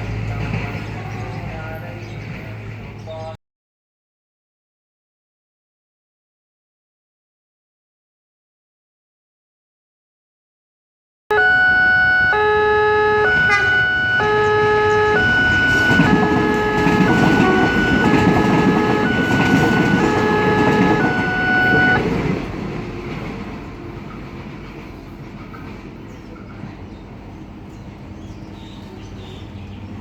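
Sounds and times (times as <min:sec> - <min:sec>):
level crossing two-tone alarm chime: 0:11.3 - 0:22.0.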